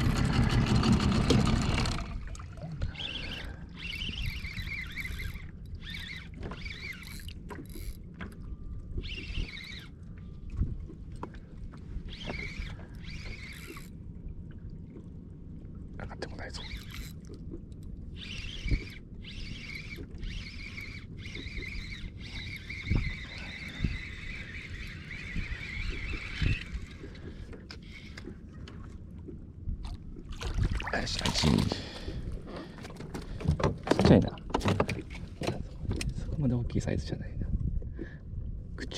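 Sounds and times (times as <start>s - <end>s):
fishing reel whirring: 0.0s - 2.3s, 2.9s - 10.1s, 12.0s - 14.0s, 16.5s - 17.2s, 17.8s - 28.4s
water sloshing against boat: 0.0s - 38.9s
wavering high whine: 2.9s - 10.0s, 12.0s - 14.0s, 18.1s - 28.2s.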